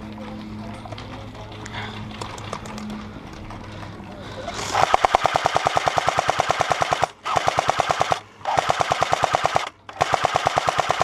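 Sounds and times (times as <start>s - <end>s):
airsoft rifle firing full auto: 4.7s - 11.0s.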